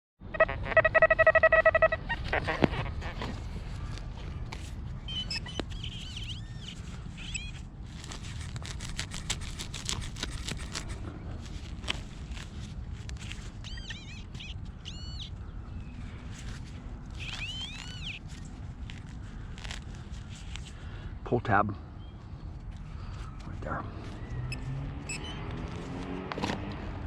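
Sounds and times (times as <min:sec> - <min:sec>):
metal detector tones: 0:24.5 - 0:25.5.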